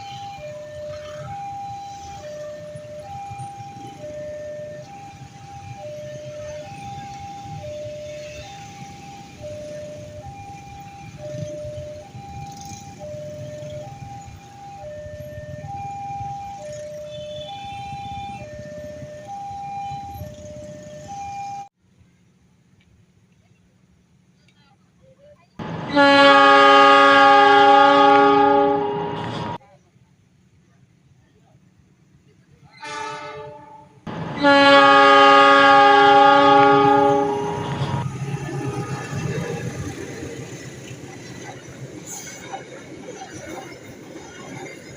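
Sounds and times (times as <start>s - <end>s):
two-tone level crossing alarm: 0.0s - 21.7s, 34.1s - 39.5s
passing train rumble: 0.0s - 22.7s, 25.2s - 44.9s
train horn blasts: 17.0s - 18.5s, 25.6s - 29.6s, 32.8s - 39.6s.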